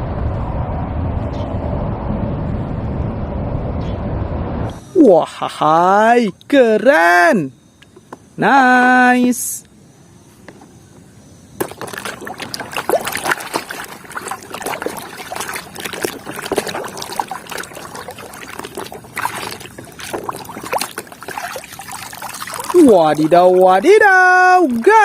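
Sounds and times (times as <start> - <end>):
water splashing and trickling: 11.6 - 25.0.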